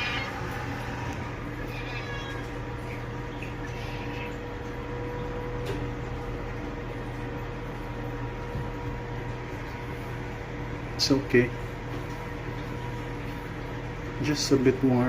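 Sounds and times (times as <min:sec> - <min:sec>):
pet dryer blower hum: 0:00.0 - 0:02.7.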